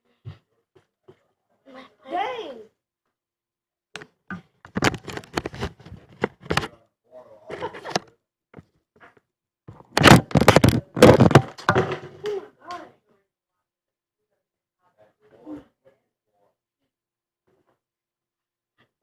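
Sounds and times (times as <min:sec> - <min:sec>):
handling knocks and scrapes: 0:04.3 - 0:06.7, 0:09.7 - 0:12.4.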